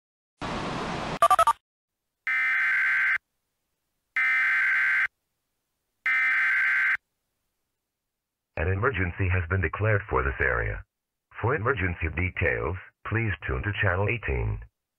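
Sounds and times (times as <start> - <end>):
noise burst: 0.4 - 1.4
digital data tones: 1.2 - 1.6
quick beeps: 1.2 - 1.6.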